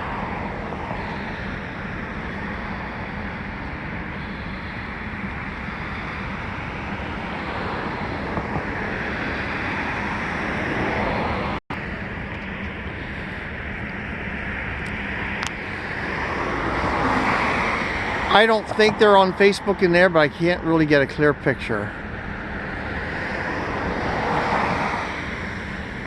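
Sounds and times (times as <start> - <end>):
road traffic: 0.0 - 26.0
vehicle passing: 14.3 - 26.0.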